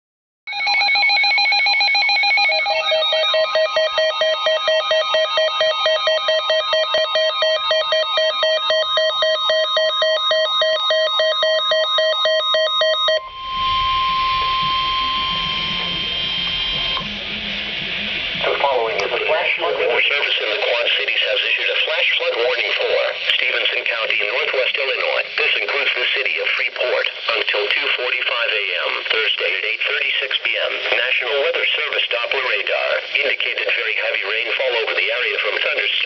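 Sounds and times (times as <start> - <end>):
pulsing two-tone alarm: 0.5 - 18.8
electronic alert warble: 0.5 - 19.4
steady warning tone: 0.5 - 23.4
radio static: 13.2 - 36.0.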